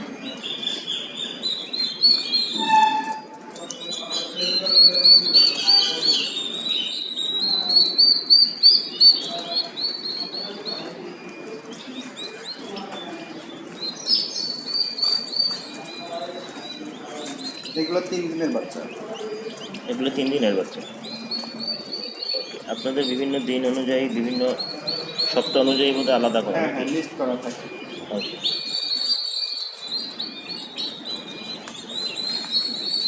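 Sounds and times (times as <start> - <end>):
turkey poults peeping: 0.0 - 33.0.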